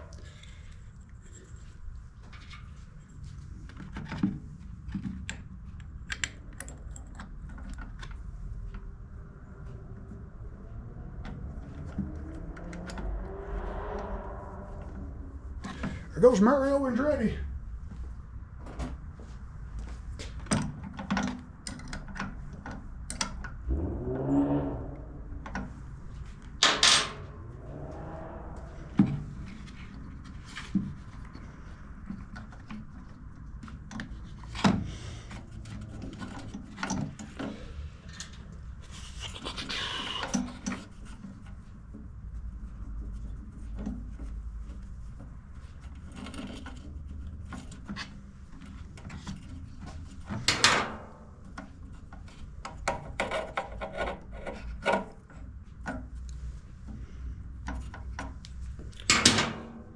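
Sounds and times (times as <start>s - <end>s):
tools and parts knocking: 59.0s - 59.7s.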